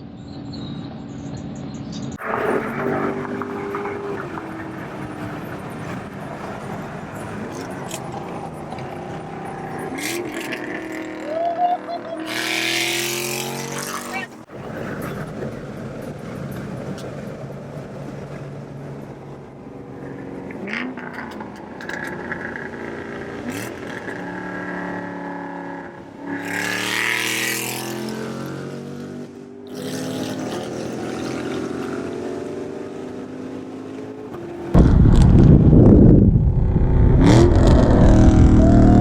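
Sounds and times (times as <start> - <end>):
car engine accelerating: 2.1 - 16.9, 17.7 - 39.0
rush of noise: 34.7 - 39.0.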